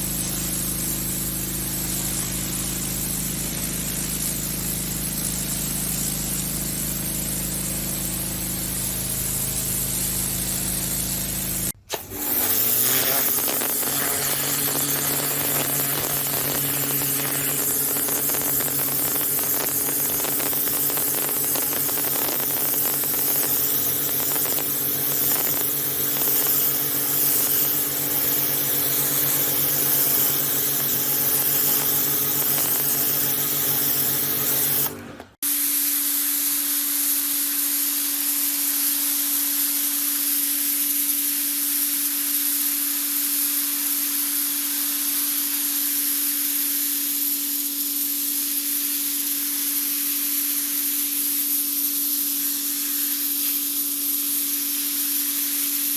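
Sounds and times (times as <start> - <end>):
pressure washer hum: 0.0 - 35.8
pressure washer water jet hiss: 0.0 - 36.0, 42.6 - 55.9.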